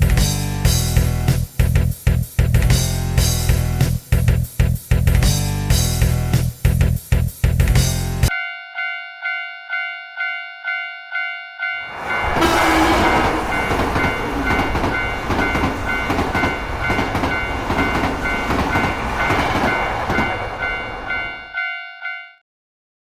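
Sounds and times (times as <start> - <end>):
railroad crossing bell ringing: 8.3 - 22.4
train passing with rumble: 11.8 - 21.7
rhythmic clatter over rails: 11.8 - 21.8.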